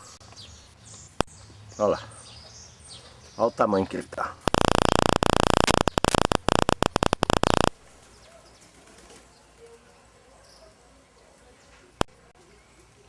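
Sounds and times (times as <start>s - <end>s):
sharp click: 4.5s - 7.8s.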